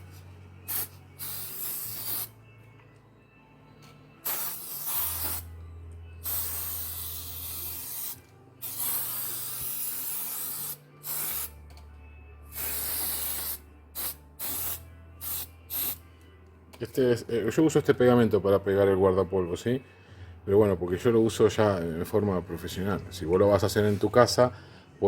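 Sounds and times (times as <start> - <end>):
spraying hiss: 4.3 - 5.5.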